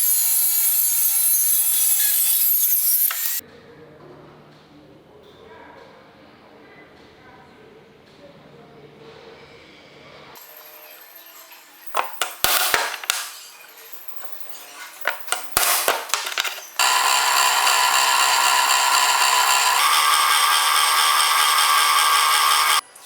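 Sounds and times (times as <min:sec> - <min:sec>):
angle grinder whining: 0:00.0 - 0:03.4, 0:15.1 - 0:22.8
metal parts clanking: 0:11.9 - 0:13.4, 0:14.2 - 0:20.2.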